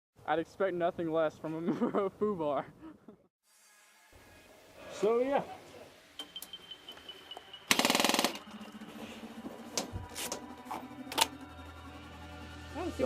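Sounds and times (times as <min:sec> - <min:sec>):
airsoft gun full-auto burst: 0:07.7 - 0:08.6.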